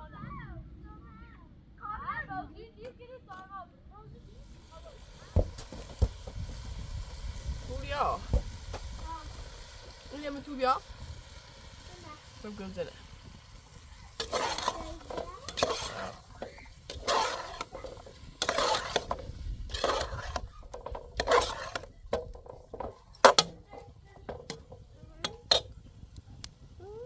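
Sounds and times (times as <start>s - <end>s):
scraping strokes: 13.7s - 25.8s.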